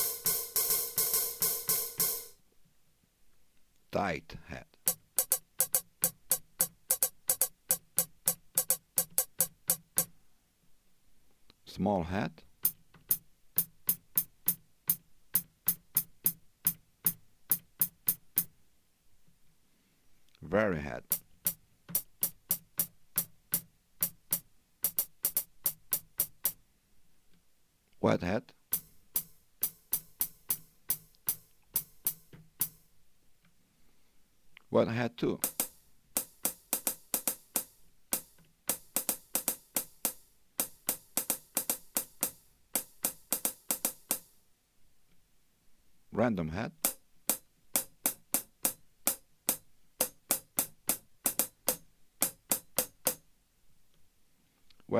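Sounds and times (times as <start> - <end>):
drum machine hi-hat hits: 0.0 - 2.4, 4.8 - 10.1, 12.6 - 18.5, 21.0 - 26.6, 28.7 - 32.9, 35.4 - 44.4, 46.8 - 53.2.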